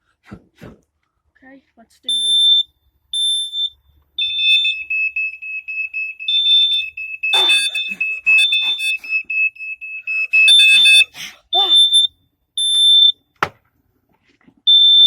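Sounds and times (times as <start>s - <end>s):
higher-pitched smoke alarm beeping: 2.1s - 13.3s, 14.7s - 15.0s
lower-pitched smoke alarm beeping rapidly: 2.1s - 13.3s, 14.7s - 15.0s.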